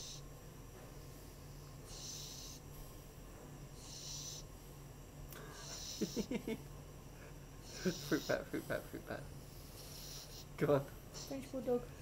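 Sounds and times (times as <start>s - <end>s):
dog snoring and wheezing: 0.0s - 0.3s, 1.8s - 2.6s, 3.8s - 4.5s, 5.5s - 6.3s, 7.6s - 10.6s.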